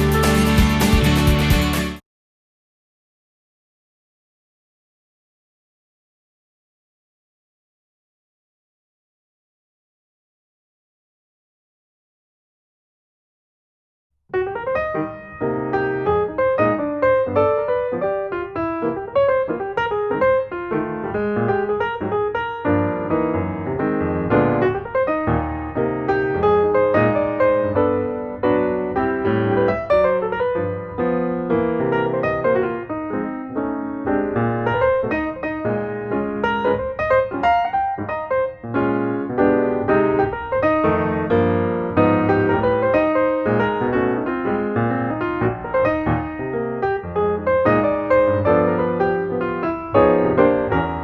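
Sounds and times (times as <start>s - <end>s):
light piano tune: 0.0s - 2.0s, 14.3s - 51.0s.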